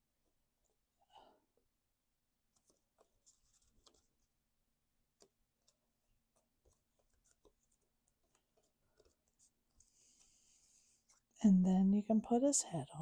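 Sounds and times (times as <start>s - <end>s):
paper rustle: 2.5s - 4.4s, 5.1s - 11.4s.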